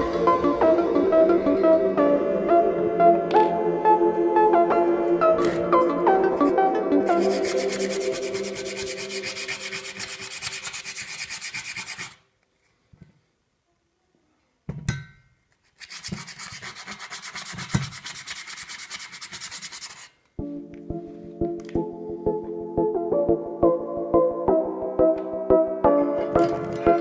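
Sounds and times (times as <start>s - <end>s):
fast rubbing strokes: 7.1s - 12.2s, 15.6s - 20.2s.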